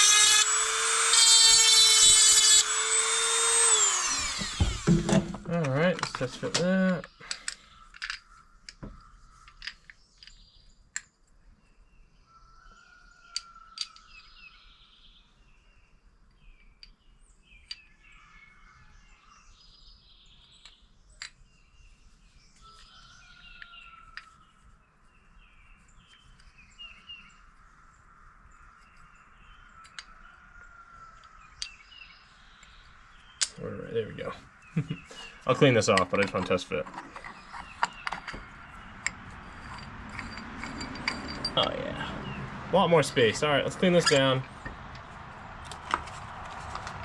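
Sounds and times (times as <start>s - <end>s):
birdsong: 0.0s - 47.0s
metal parts clicking: 4.1s - 8.2s, 35.4s - 41.8s, 43.8s - 45.2s.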